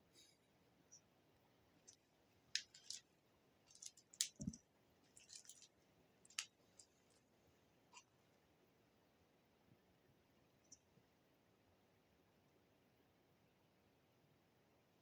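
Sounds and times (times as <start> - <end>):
faint clicks and crackles: 1.8 - 7.3.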